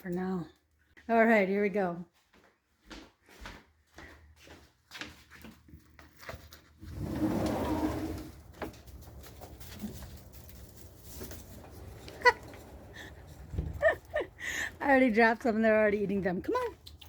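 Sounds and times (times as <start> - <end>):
rustling: 5.8 - 14.2.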